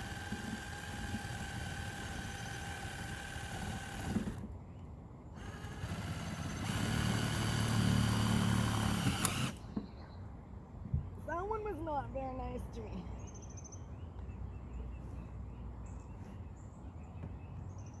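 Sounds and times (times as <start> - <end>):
cordless drill whining: 0.0 - 4.5, 5.4 - 9.6.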